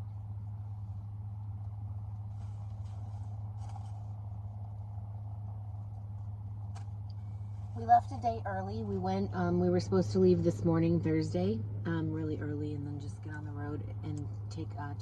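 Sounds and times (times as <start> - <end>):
faint rustles: 0.0 - 9.0
car engine idling: 0.0 - 15.0.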